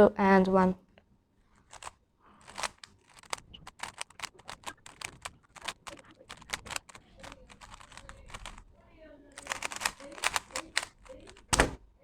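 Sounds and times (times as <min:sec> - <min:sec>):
puzzle cube clicking: 0:01.6 - 0:08.7, 0:09.4 - 0:11.8.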